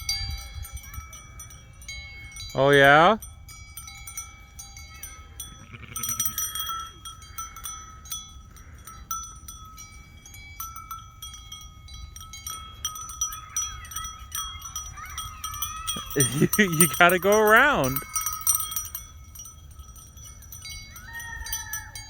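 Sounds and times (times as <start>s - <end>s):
metal wind chimes ringing: 0.0s - 22.0s
faint sheep bleating: 5.6s - 6.2s.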